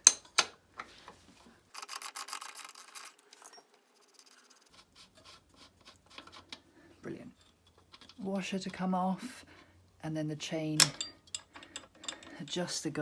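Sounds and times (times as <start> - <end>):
metal tool clicks: 10.8 - 12.3.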